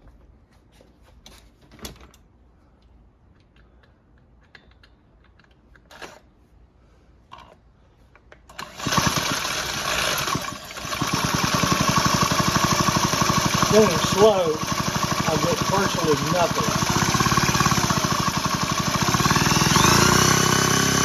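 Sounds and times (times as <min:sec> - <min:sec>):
power drill whirring: 0:08.5 - 0:21.0.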